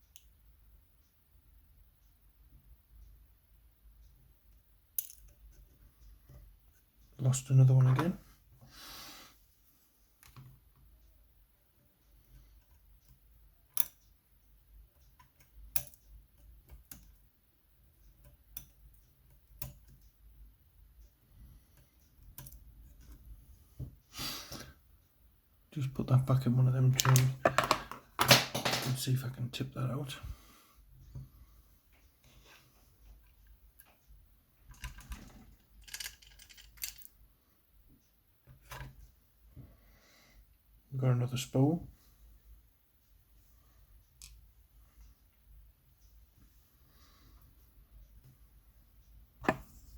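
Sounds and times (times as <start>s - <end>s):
lock pins and springs rattling: 34.7s - 37.1s.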